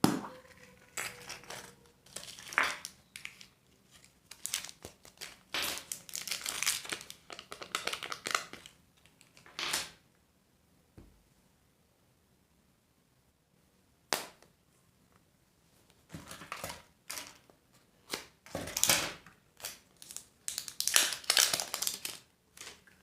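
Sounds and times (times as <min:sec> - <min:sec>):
wrappers crinkling: 0:00.6 - 0:09.5, 0:19.6 - 0:23.0.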